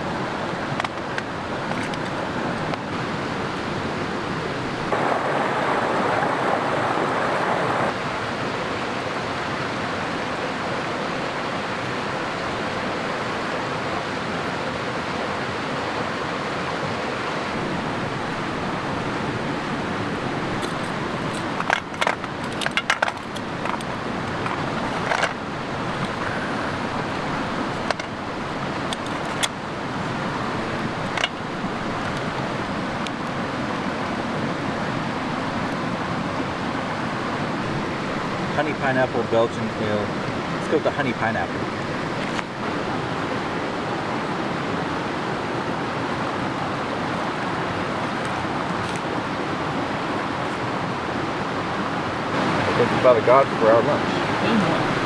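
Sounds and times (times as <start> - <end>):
rushing creek water: 0.0 - 55.0.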